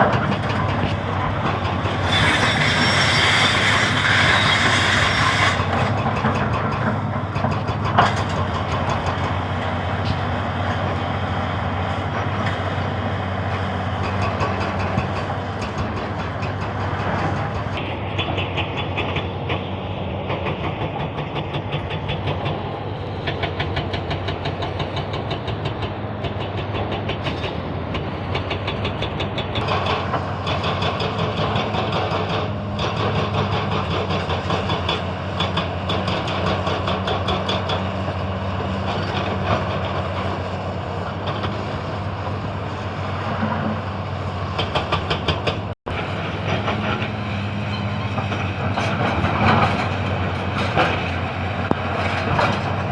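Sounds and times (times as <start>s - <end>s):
excavator diesel engine under load: 0.0s - 52.9s.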